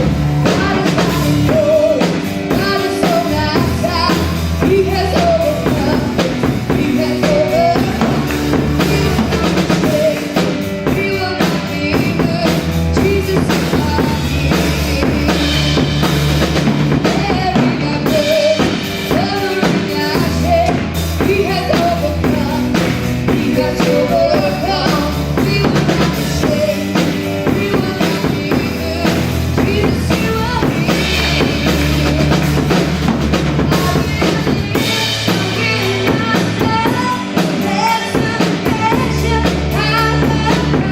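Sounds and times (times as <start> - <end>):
bass guitar: 0.0 - 40.9
drum kit: 0.0 - 40.9
keyboard: 0.0 - 40.9
person singing: 0.0 - 40.9.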